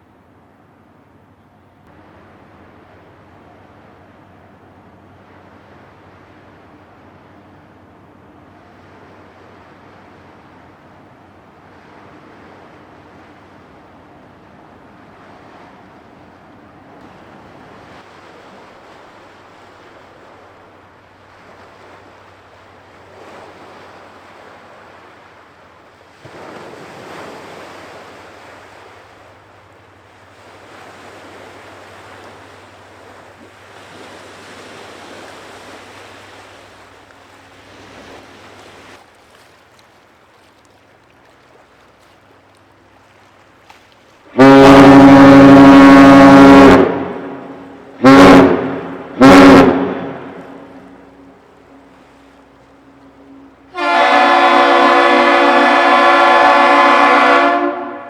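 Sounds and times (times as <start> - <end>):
waves: 0.0 - 58.0
wind: 0.0 - 58.0
ship horn blast: 44.3 - 52.0, 52.9 - 58.0.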